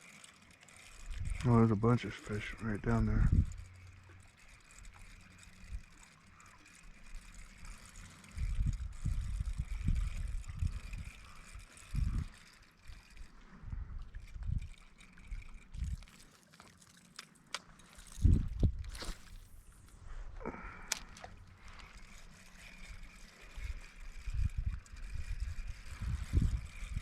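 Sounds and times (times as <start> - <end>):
water lapping against boat hull: 3.8 - 19.9.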